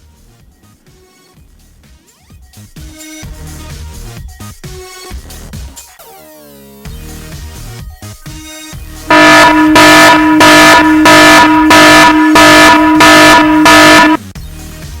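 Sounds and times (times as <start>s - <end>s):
pulsing alarm buzzer: 9.1s - 14.2s.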